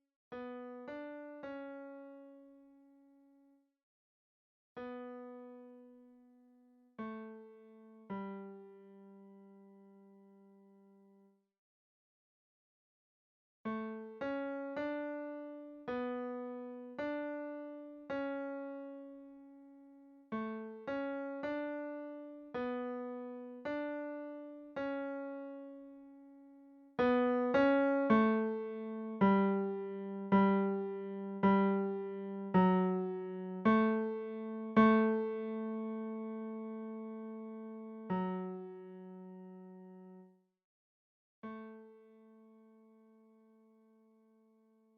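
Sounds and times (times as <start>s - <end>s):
piano single-note melody: 0.4s - 3.4s, 4.8s - 11.0s, 13.7s - 40.3s, 41.5s - 44.4s.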